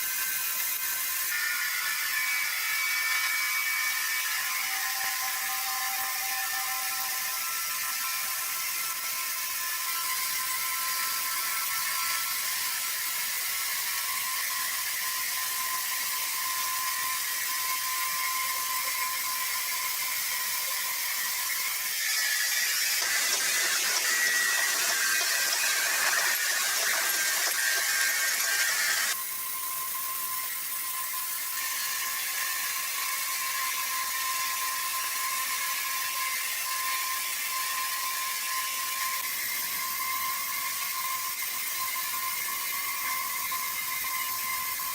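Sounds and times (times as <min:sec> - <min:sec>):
sawmill machinery whining: 0:00.0 - 0:29.2.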